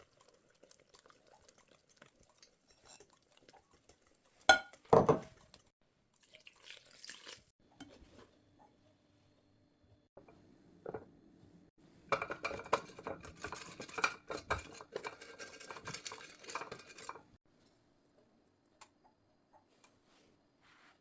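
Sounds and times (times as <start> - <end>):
utensils clinking against dishes: 12.1 - 17.3.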